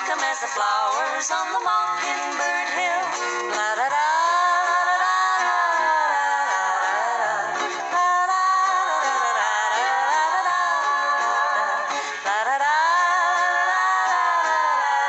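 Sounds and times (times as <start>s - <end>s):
wordless voice singing long notes: 3.6s - 15.0s.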